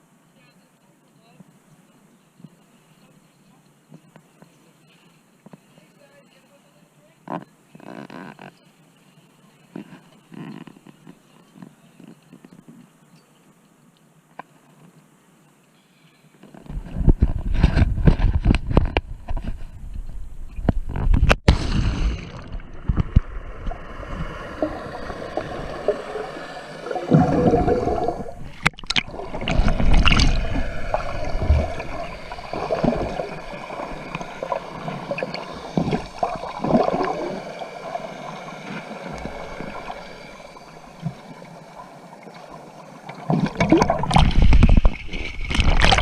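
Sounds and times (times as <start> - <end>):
water gurgling and sloshing: 16.5 - 46.0.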